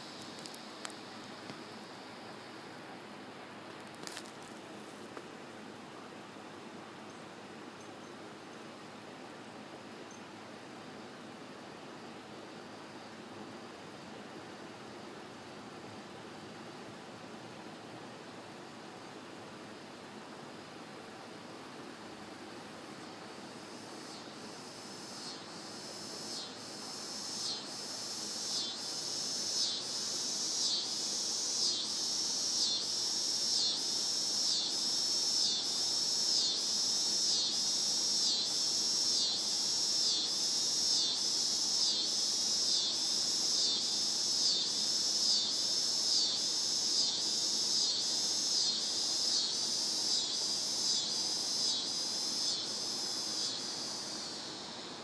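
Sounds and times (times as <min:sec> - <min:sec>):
cicadas buzzing: 0:00.0 - 0:05.8, 0:21.4 - 0:55.0.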